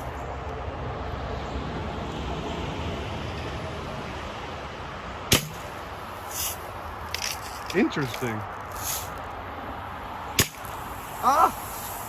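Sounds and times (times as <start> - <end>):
outdoor background noise: 0.0 - 12.0
bb gun shot: 5.3 - 5.7
short faint hiss: 6.3 - 7.7, 8.7 - 9.2.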